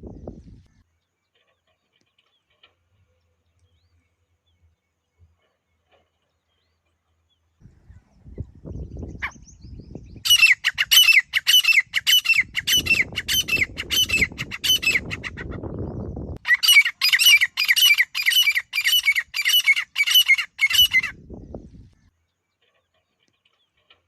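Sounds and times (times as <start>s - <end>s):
bird calling harsh notes: 10.2s - 15.5s, 16.4s - 21.2s.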